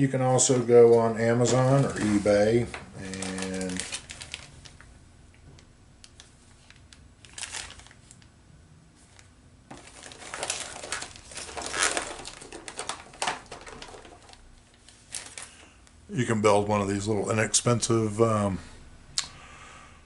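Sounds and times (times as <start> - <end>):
packaging crinkling and rustling: 0.4 - 4.9, 5.5 - 8.3, 9.0 - 15.8.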